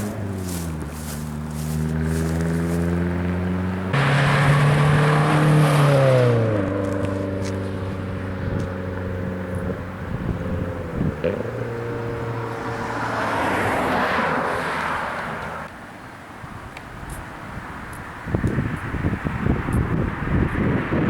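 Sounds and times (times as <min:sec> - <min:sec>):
car engine and exhaust running: 0:00.0 - 0:12.6.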